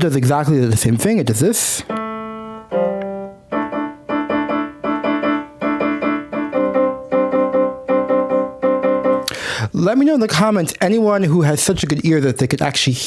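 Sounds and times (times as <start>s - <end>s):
piano playing chords: 1.8s - 9.6s.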